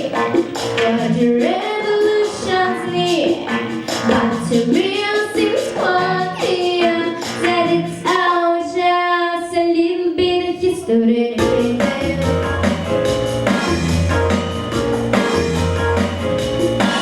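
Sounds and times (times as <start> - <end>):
instrumental accompaniment: 0.0 - 8.3, 11.4 - 17.0
girl singing: 0.0 - 12.8.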